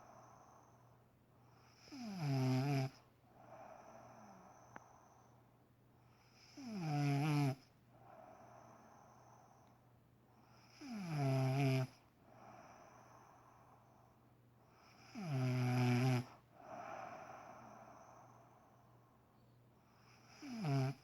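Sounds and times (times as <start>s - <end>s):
woman snoring: 1.7s - 3.0s, 6.4s - 7.6s, 10.6s - 12.0s, 15.0s - 18.4s, 20.2s - 21.0s
breathy exhale: 16.6s - 18.8s.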